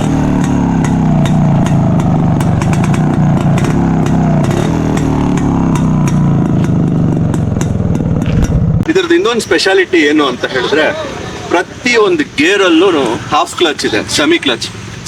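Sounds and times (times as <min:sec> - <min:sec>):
two-stroke engine revving: 0:00.0 - 0:10.1.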